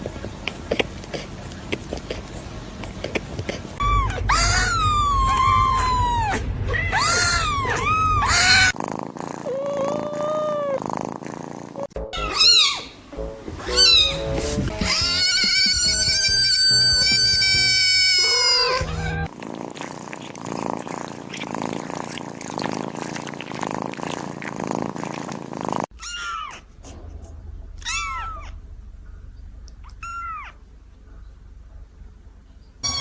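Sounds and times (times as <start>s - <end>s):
kitten meowing: 3.8s - 8.7s, 14.8s - 19.3s, 26.0s - 26.8s, 27.8s - 28.5s, 29.8s - 30.6s
kitten purring: 7.1s - 12.0s, 18.3s - 32.6s.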